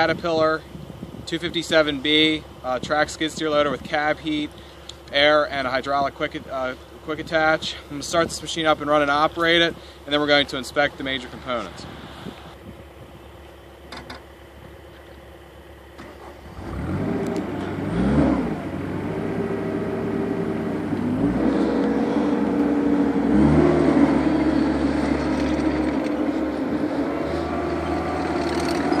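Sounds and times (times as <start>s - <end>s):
diesel engine starting and revving: 14.5s - 29.0s.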